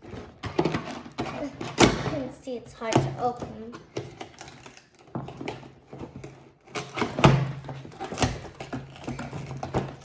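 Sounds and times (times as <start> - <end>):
packaging scraping and rustling: 4.0 - 10.0.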